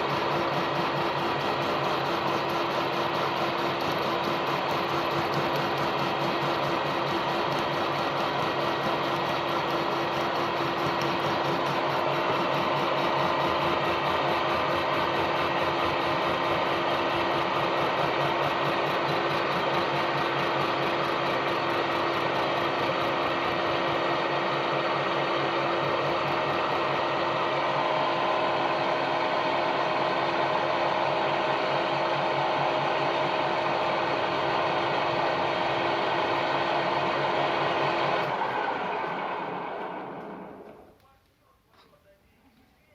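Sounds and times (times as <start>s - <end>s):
milling machine cutting: 0.0s - 23.9s.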